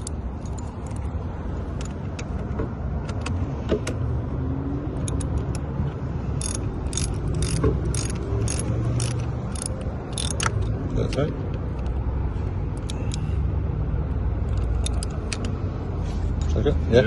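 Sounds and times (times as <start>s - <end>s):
wrench clicking on metal: 0.0s - 1.1s, 5.0s - 5.7s, 6.3s - 11.2s, 12.7s - 13.3s, 14.5s - 15.6s.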